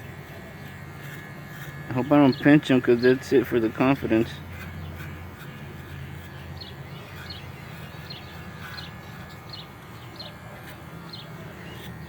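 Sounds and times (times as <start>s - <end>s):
electric hair clippers humming: 0.0s - 12.0s
small bird chirping: 6.4s - 10.4s.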